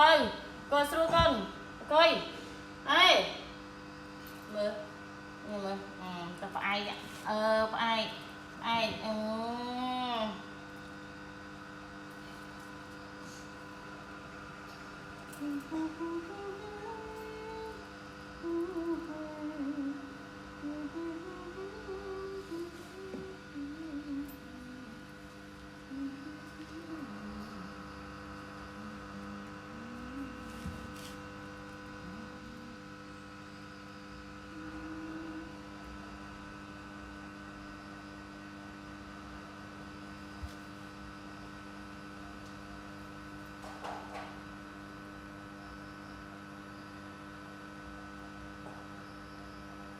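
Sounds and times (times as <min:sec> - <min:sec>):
electrical hum: 0:00.0 - 0:49.9
person humming a slow tune: 0:15.3 - 0:33.4, 0:34.3 - 0:36.0.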